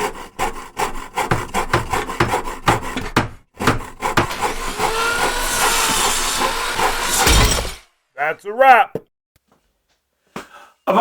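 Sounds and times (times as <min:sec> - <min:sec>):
hand tool strokes on wood: 0:03.8 - 0:07.8.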